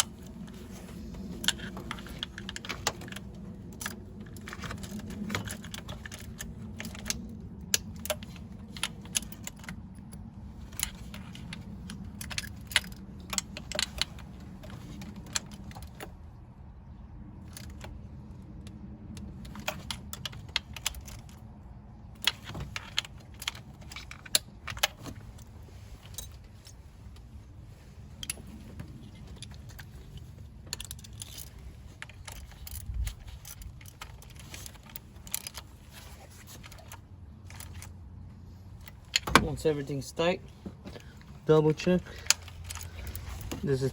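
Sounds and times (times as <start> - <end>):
steady low hum: 0.0 - 43.9
metal tools clinking: 28.0 - 43.9.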